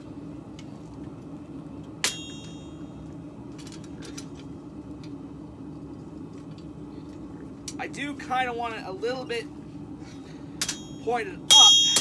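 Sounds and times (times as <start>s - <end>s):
steady low hum: 0.0s - 12.0s
sharp metallic clink: 2.0s - 2.8s, 10.6s - 12.0s.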